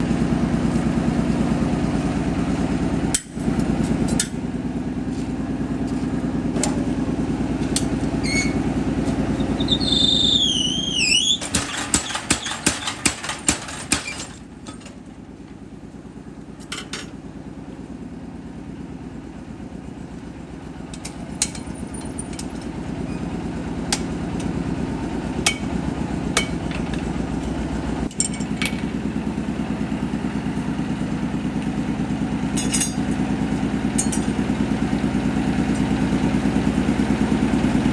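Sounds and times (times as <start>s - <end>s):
high wavering squeal: 8.2s - 8.7s, 9.3s - 11.4s.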